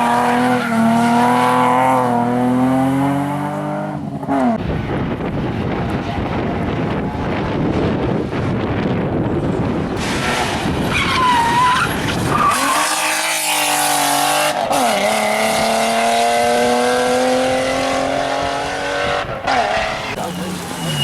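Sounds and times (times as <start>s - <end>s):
rally car engine revving: 0.0s - 21.0s.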